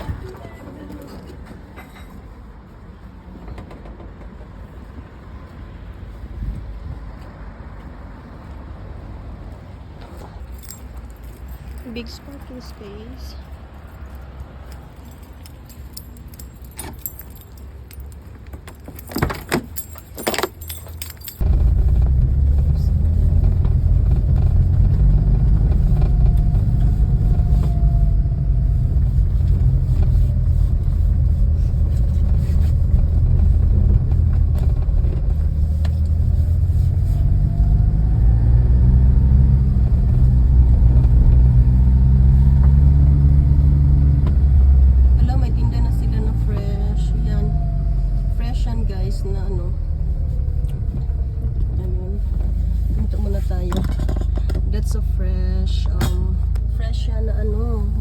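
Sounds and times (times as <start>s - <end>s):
car rumbling on the move: 3.0s - 58.0s
keys jangling: 10.4s - 12.6s, 13.7s - 21.4s.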